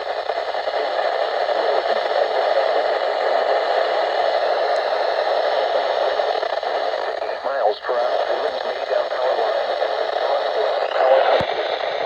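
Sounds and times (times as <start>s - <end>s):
radio static hiss: 0.0s - 12.0s.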